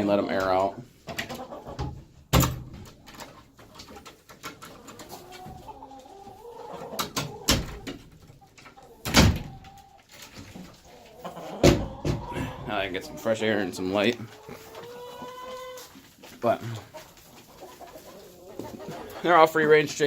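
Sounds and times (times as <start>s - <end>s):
chickens clucking: 0.0s - 20.0s.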